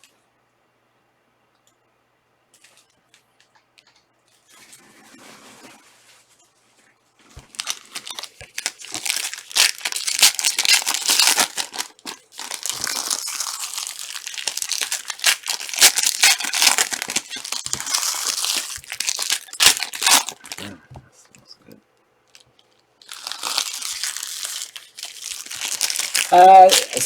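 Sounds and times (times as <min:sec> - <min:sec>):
card pack wrappers crinkling: 0:07.3 - 0:20.8, 0:22.3 - 0:27.0.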